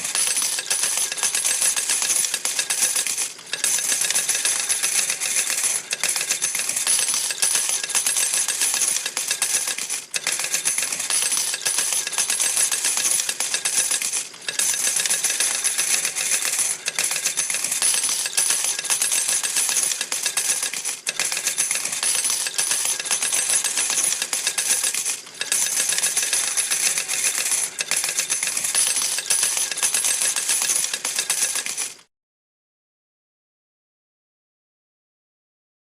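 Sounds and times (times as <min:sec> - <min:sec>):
coins clattering from slot machine: 0:00.0 - 0:32.1.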